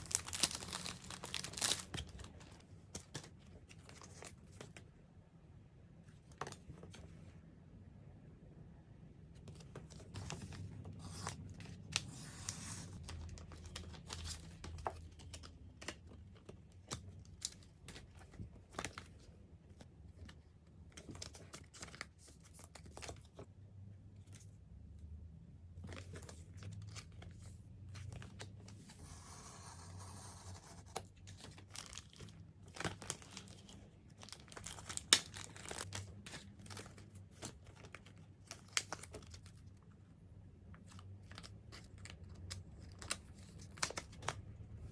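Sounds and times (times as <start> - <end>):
packaging tearing and crinkling: 0.0 - 2.4.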